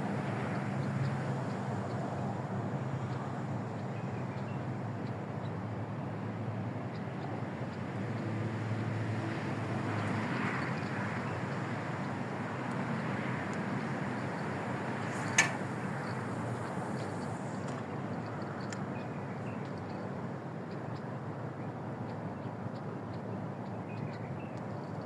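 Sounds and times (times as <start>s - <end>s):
sharp click: 15.1s - 16.1s.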